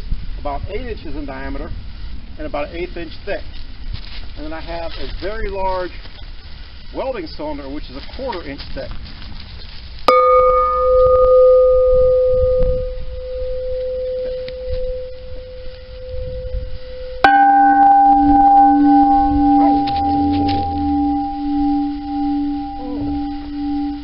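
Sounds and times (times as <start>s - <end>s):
gas cylinder bell ringing: 10.1s - 12.8s, 17.2s - 24.0s
lower-pitched cylinder bell ringing: 10.1s - 16.6s, 17.2s - 24.0s.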